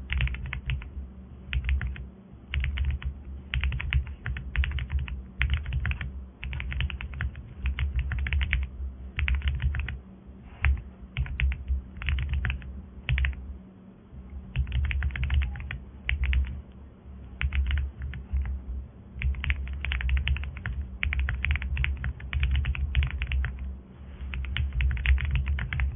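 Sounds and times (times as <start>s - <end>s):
mechanical keyboard typing: 0.1s - 0.9s, 1.5s - 10.0s, 10.6s - 13.4s, 14.5s - 16.6s, 17.4s - 18.6s, 19.2s - 23.6s, 24.3s - 25.9s.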